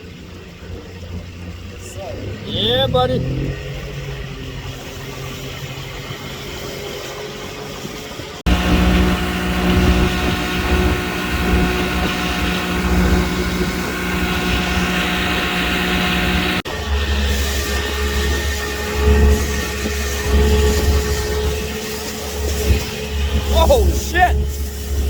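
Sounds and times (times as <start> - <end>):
boat engine humming: 0.0 - 25.0.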